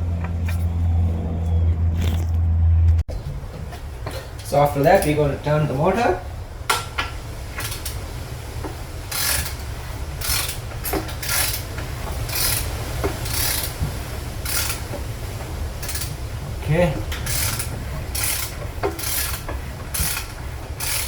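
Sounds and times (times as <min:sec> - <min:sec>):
steady low hum: 0:00.0 - 0:06.7
ratchet wrench clicking: 0:07.6 - 0:08.0, 0:09.1 - 0:11.7, 0:12.3 - 0:13.8, 0:14.4 - 0:14.8, 0:15.8 - 0:16.2, 0:17.2 - 0:21.0.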